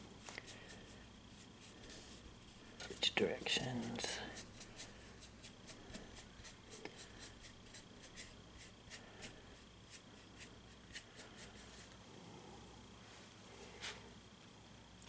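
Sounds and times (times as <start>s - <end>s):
brush strokes on canvas: 0.2s - 12.0s.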